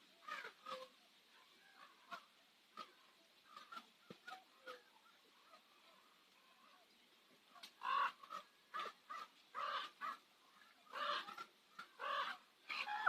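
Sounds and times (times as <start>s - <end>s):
ravens calling harshly: 0.1s - 6.8s, 7.5s - 13.0s.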